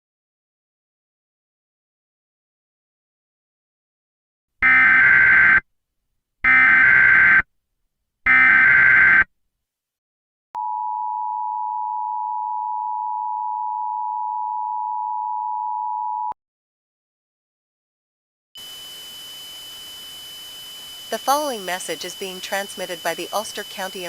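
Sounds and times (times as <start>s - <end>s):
digital header data bursts: 18.6s - 24.0s
two-tone attention signal: 20.9s - 24.0s.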